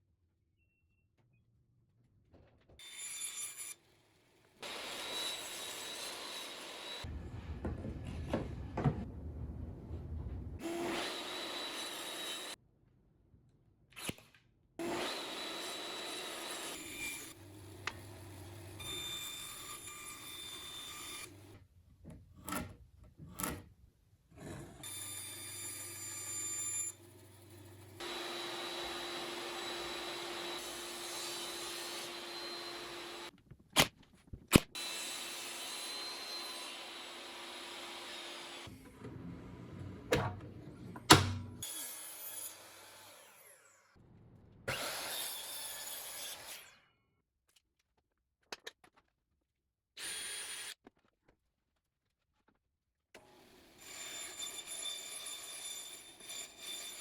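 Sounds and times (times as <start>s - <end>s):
power tools whining on wood: 4.6s - 7.1s, 10.6s - 12.6s, 14.8s - 19.8s, 27.5s - 33.3s, 34.8s - 39.8s.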